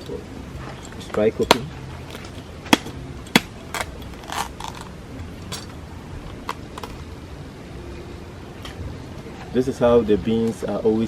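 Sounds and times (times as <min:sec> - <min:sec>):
cocoa pod knocks and cracks: 0:01.1 - 0:04.9.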